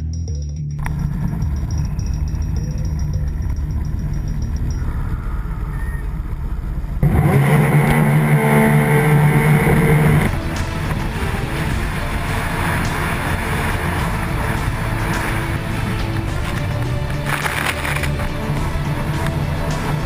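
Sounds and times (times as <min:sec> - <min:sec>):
jet ski engines at high revs: 0:05.6 - 0:19.7.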